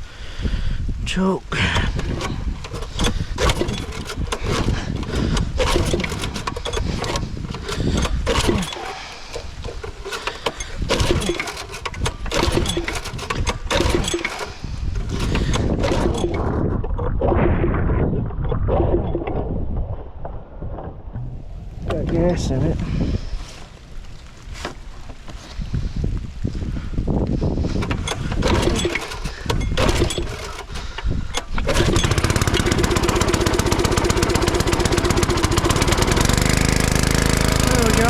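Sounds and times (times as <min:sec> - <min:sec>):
wind buffeting microphone: 0:00.0 - 0:38.0
handling knocks and clatters: 0:01.6 - 0:17.2, 0:21.1 - 0:26.2, 0:27.2 - 0:36.5.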